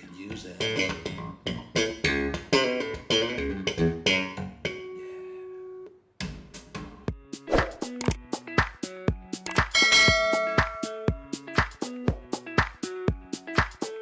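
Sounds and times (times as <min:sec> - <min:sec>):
jazz fusion music: 0:00.0 - 0:05.0
plucked bass guitar: 0:00.0 - 0:05.1
electric guitar notes: 0:00.4 - 0:05.8
bell-like ringing hits: 0:09.7 - 0:11.0.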